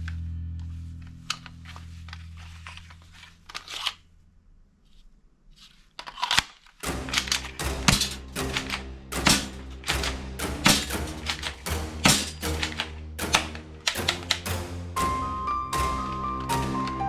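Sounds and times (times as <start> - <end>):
plastic toy gun clicking: 6.0 - 6.8, 10.7 - 14.5
background music: 6.8 - 17.0.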